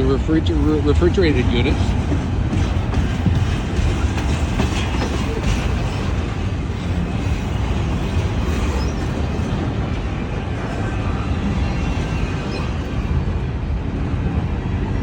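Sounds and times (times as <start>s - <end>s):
wheels clicking over rail joints: 0.0s - 10.9s
train wheels rumbling on rail: 0.0s - 15.0s.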